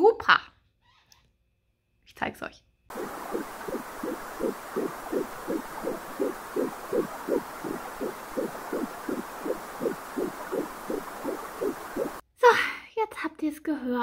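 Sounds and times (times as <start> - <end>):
fetal heartbeat whooshing: 2.9 - 12.2
steady hiss: 2.9 - 12.2.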